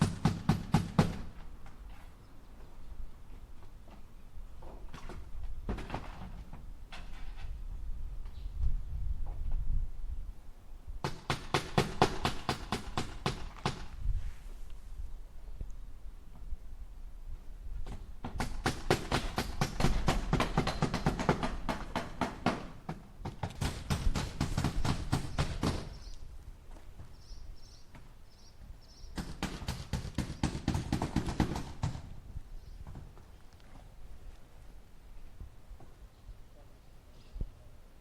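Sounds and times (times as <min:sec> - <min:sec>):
hammer striking nails into wood: 0:00.0 - 0:01.3, 0:11.0 - 0:13.9, 0:18.2 - 0:26.0, 0:29.2 - 0:32.1.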